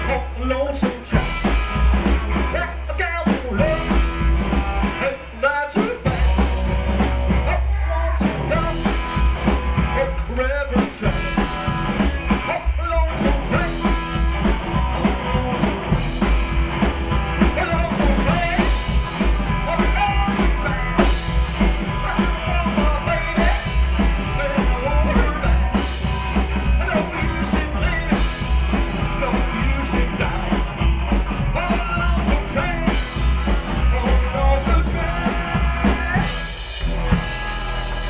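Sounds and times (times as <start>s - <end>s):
drum kit: 0.0s - 38.0s
electric guitar: 0.0s - 38.0s
person singing: 4.9s - 9.0s, 17.4s - 26.0s, 26.6s - 30.8s, 31.4s - 37.7s.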